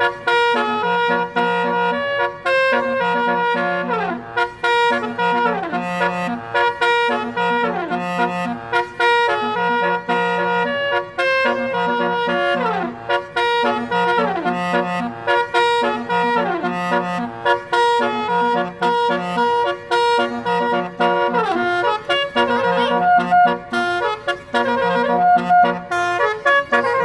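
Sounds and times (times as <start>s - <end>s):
musical bus horn melody: 0.0s - 27.0s.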